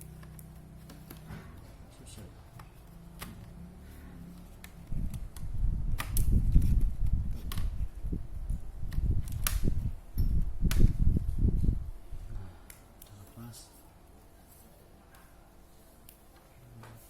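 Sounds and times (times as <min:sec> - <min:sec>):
sharp plastic clicks: 0:04.5 - 0:07.8.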